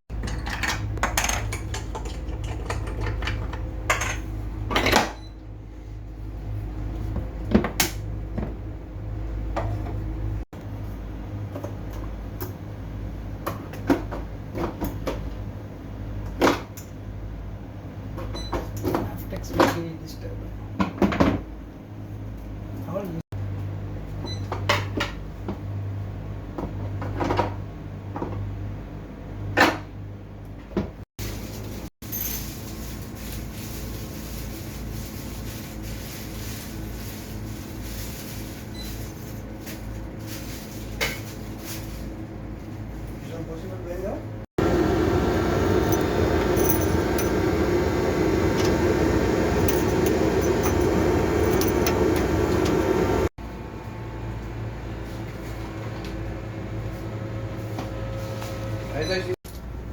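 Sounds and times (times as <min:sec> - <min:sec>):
low machinery hum: 0:31.2 - 0:59.9
machinery drone: 0:44.6 - 0:54.2
knocks and clatter of equipment: 0:45.8 - 0:47.5, 0:49.6 - 0:52.2.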